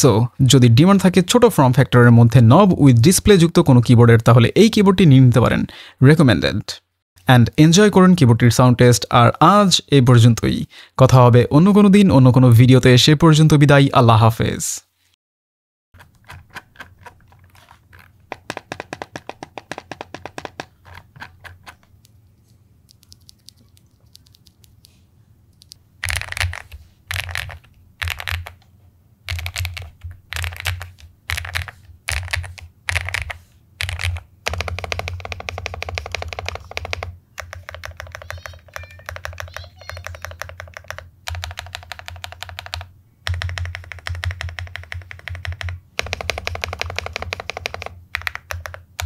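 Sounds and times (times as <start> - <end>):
mechanical keyboard typing: 16.0 - 21.9, 22.9 - 24.9, 25.6 - 28.6, 29.3 - 49.0.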